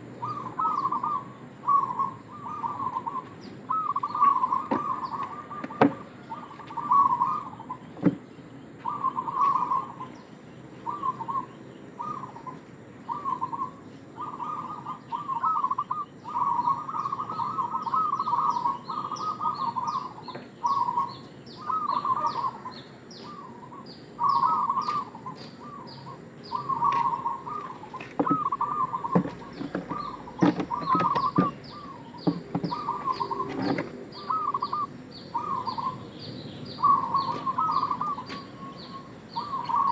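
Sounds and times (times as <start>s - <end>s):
dove cooing: 0.0s - 39.9s
bird chirping rapidly: 13.1s - 39.9s.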